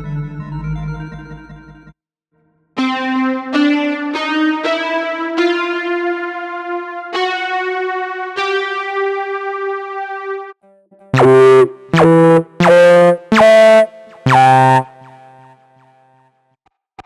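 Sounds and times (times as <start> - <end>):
loud synthesizer chords: 11.2 - 15.5
held synthesizer note: 11.2 - 15.6.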